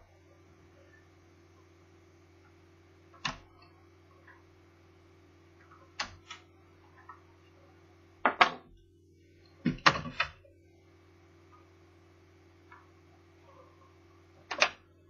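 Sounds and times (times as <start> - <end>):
laptop parts clicking and knocking: 9.6 - 10.4.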